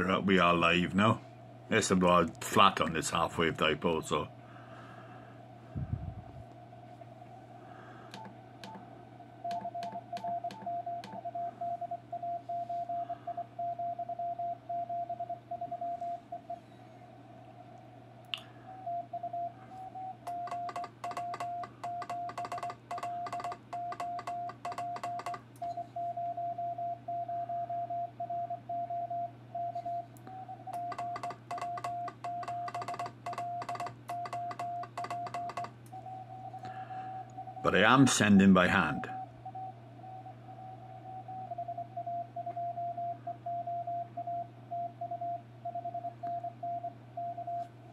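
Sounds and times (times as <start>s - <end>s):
steady low hum: 0.0s - 47.9s
morse code tone: 9.5s - 15.2s, 20.3s - 25.4s, 30.8s - 35.7s.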